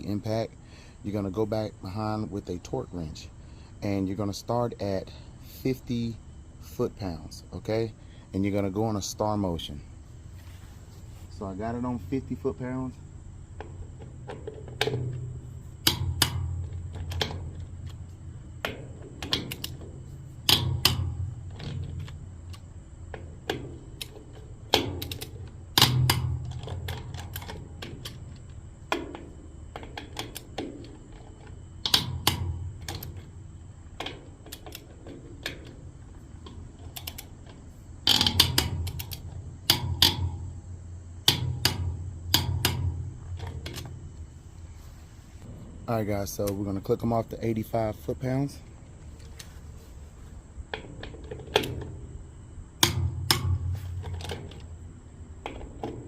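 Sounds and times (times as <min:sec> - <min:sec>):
torque wrench ratcheting and clicking: 0:38.0 - 0:40.4.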